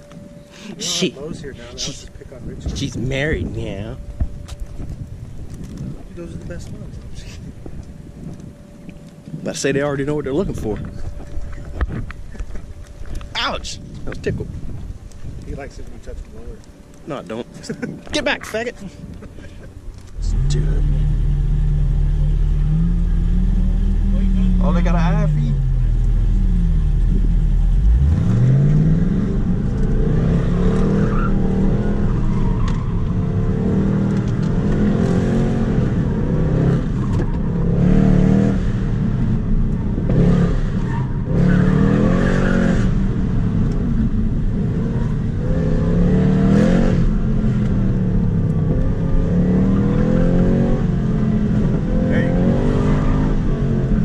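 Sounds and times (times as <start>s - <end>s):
car engine revving: 0.0s - 4.1s, 20.1s - 54.0s.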